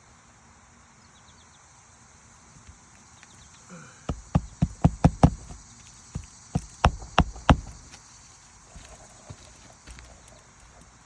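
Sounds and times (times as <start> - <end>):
hammer striking roofing nails: 4.1 - 8.0.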